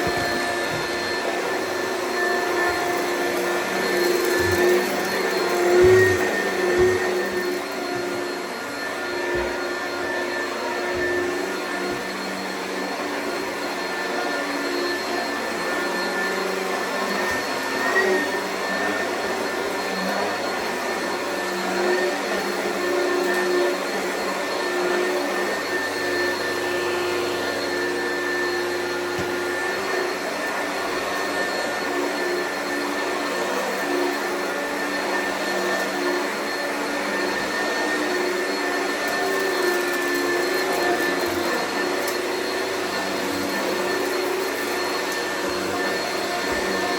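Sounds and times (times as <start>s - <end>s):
vacuum cleaner running: 0.0s - 46.9s.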